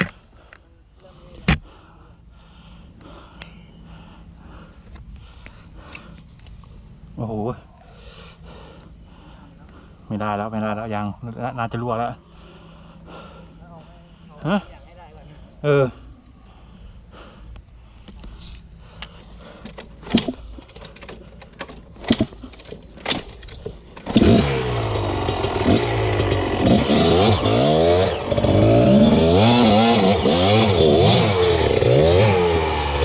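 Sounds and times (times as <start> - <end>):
dirt bike engine revving: 24.0 - 33.0.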